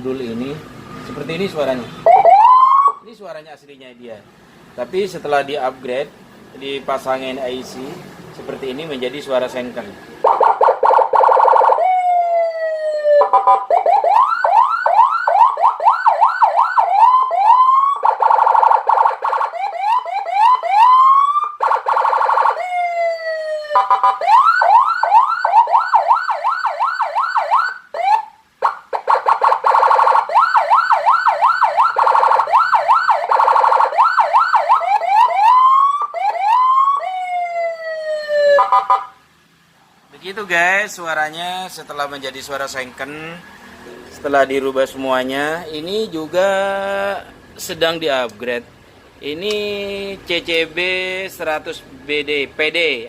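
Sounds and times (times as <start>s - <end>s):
electronic siren tones: 2.0s - 3.0s, 10.2s - 39.2s.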